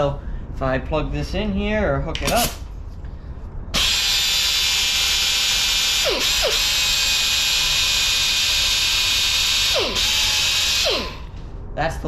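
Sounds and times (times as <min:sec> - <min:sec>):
die grinder high-pitched whine: 0:03.8 - 0:11.4.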